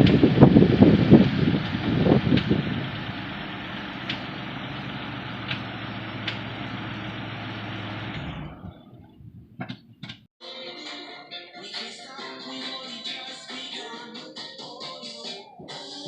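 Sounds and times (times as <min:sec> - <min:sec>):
light engine ticks: 0:00.0 - 0:08.2
car engine idling: 0:00.0 - 0:09.1.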